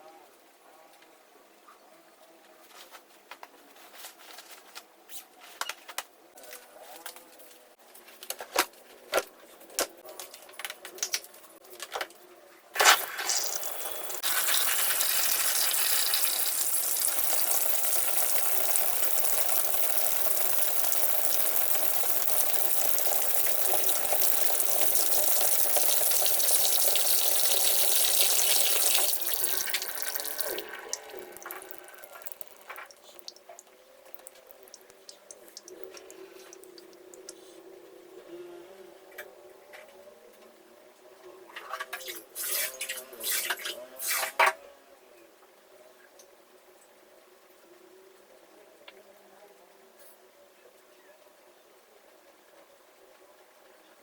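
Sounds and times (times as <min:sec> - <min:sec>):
tap water rushing into tub: 0:13.0 - 0:33.4.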